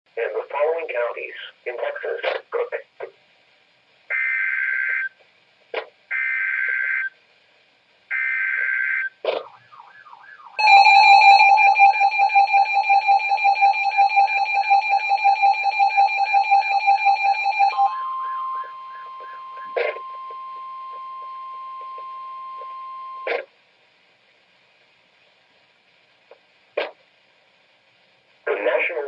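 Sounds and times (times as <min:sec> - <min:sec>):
pulsing attention signal: 0:10.6 - 0:23.3
steady single tone: 0:17.7 - 0:23.3
data burst screech: 0:17.8 - 0:23.4.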